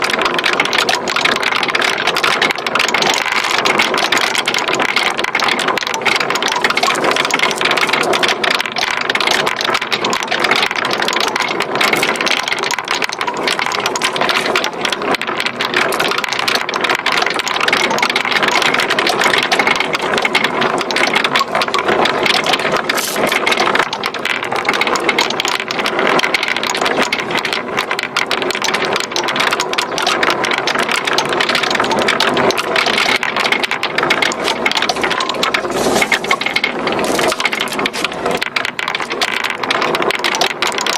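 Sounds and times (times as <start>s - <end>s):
glass marbles rattling down wood: 0.0s - 40.9s.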